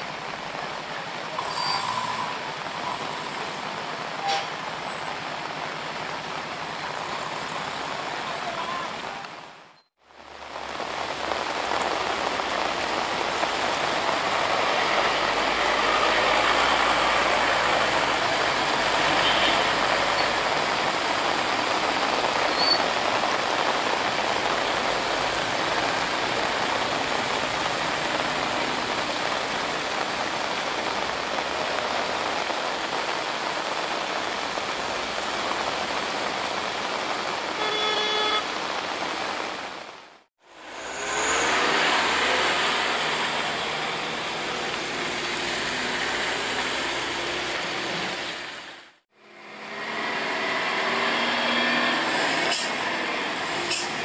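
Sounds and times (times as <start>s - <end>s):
traffic in heavy rain: 0.0s - 54.0s
vehicle horn honking: 37.6s - 38.4s.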